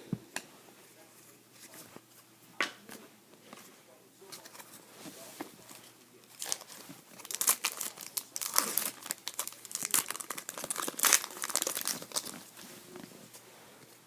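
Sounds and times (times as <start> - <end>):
wrapper tearing and crinkling: 6.3 - 12.5.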